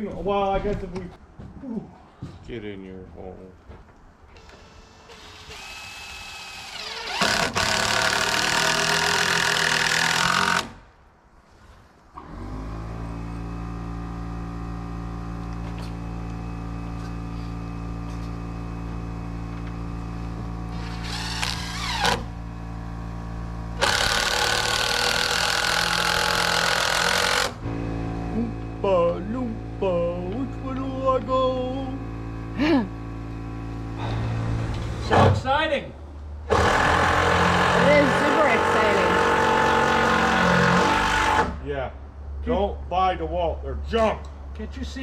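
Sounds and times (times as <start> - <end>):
power driver driving screws: 4.4 - 10.8, 20.7 - 22.4, 23.8 - 27.6, 36.5 - 41.6
steady machine hum: 13.1 - 35.1.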